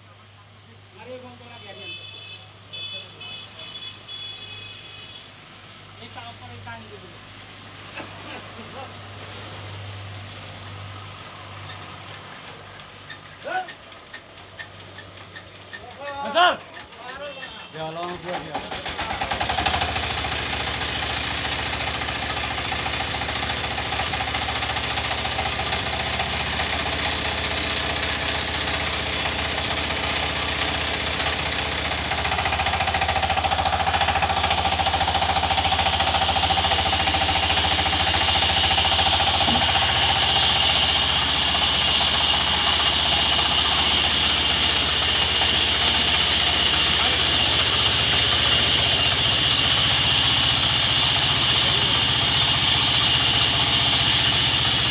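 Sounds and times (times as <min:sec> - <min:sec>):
engine knocking: 0:11.2 - 0:54.9.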